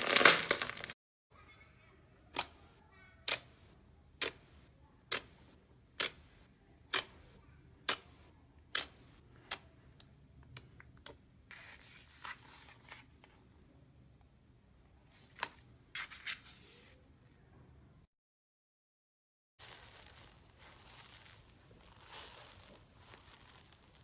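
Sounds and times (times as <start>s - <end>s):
slime squish: 19.6s - 24.0s.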